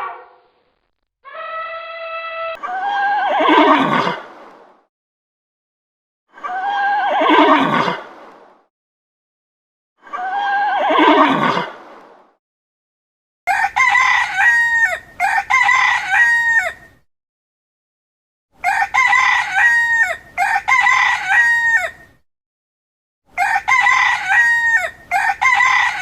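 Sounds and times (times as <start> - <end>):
rooster crowing: 13.5 - 16.9, 18.6 - 22.1, 23.4 - 26.0.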